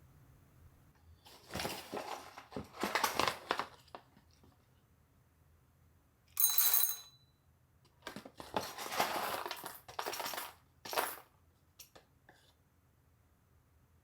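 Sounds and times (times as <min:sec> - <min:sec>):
metal clink with ringing tone: 0:06.4 - 0:07.4.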